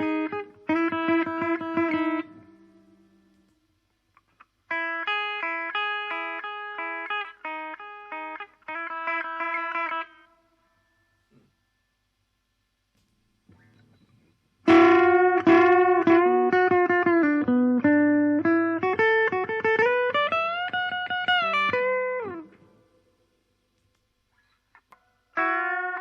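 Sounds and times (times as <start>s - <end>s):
electric guitar single notes: 0.0s - 3.5s, 14.6s - 22.8s, 25.3s - 26.0s.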